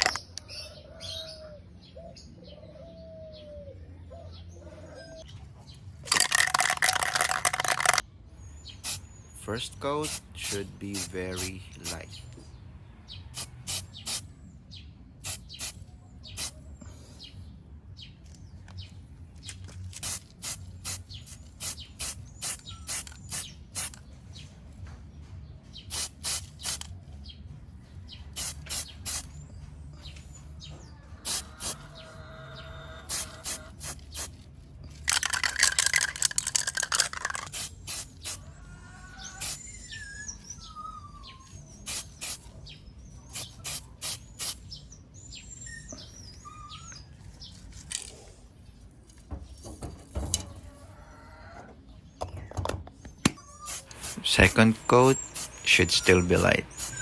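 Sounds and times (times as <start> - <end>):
birds chirping: 0.0 - 57.0
aerosol spray bursts: 8.8 - 9.0, 10.0 - 12.1, 20.0 - 24.0, 25.9 - 26.9, 28.4 - 29.3, 31.3 - 32.0, 33.1 - 34.3, 37.5 - 38.4, 39.3 - 39.6, 41.9 - 42.4, 43.4 - 44.7, 53.7 - 57.0.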